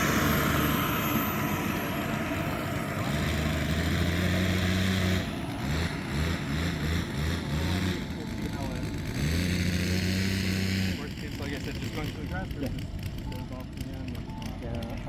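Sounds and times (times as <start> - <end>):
jet turbine whine: 0.0 - 9.2.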